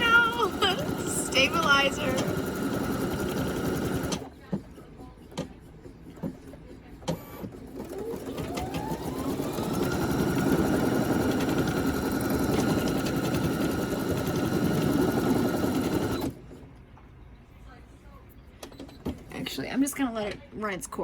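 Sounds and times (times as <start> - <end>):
embroidery machine stitching: 0.0 - 4.3, 6.1 - 16.5.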